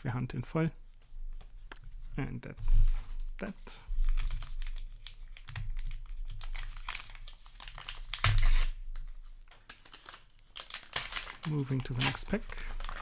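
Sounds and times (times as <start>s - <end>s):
foil wrapper crinkling: 3.1s - 13.0s.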